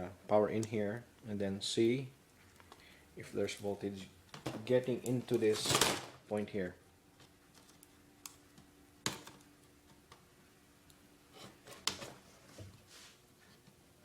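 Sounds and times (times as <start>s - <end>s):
clicks and knocks of laptop parts: 9.0s - 9.4s, 11.7s - 12.2s.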